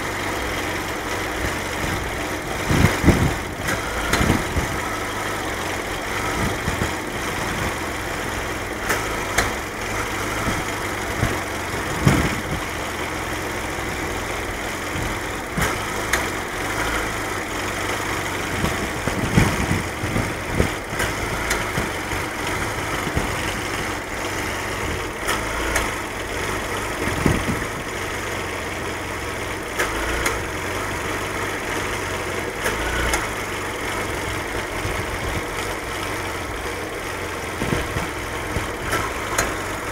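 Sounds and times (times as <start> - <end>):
car engine idling roughly: 0.0 - 39.9.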